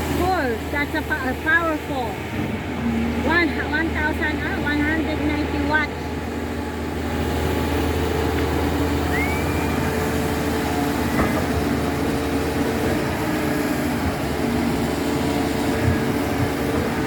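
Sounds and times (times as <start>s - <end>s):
diesel engine running under load: 0.0s - 17.0s
rising and falling chirp: 9.1s - 9.8s.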